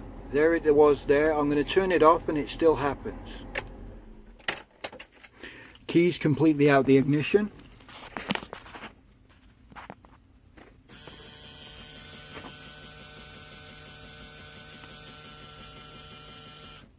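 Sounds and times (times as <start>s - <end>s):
electric whirring buzz: 10.9s - 16.9s.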